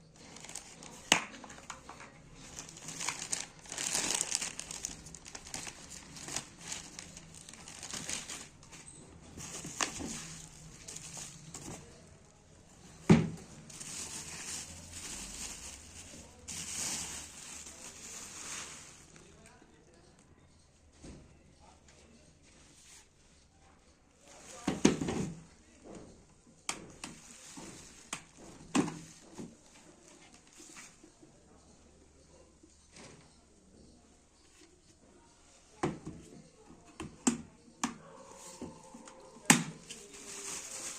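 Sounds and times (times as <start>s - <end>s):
rustling: 0.2s - 19.4s, 39.8s - 40.9s.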